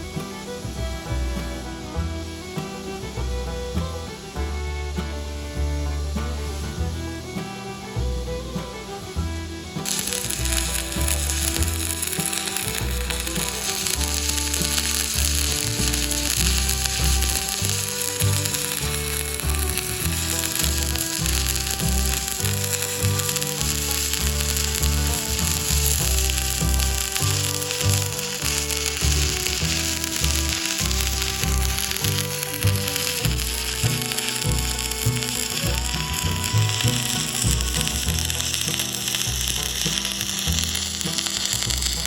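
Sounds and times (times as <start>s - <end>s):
background music with bassline: 0.0s - 42.0s
welding arc crackling sizzle: 9.8s - 42.0s.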